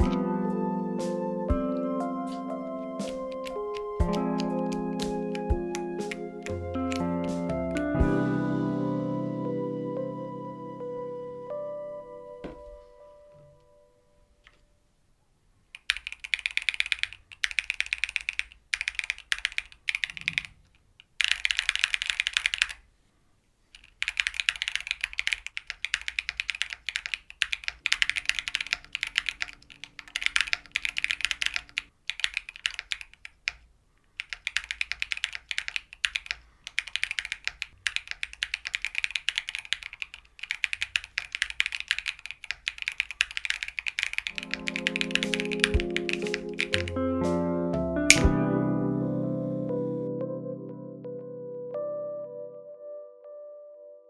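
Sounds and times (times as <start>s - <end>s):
mechanical keyboard typing: 3.0s - 8.0s, 15.8s - 22.8s, 23.8s - 33.6s, 34.2s - 47.0s, 48.1s - 48.4s.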